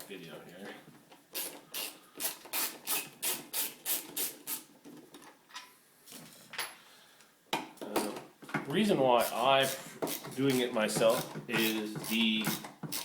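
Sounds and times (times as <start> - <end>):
hand tool clicking: 9.2 - 13.0.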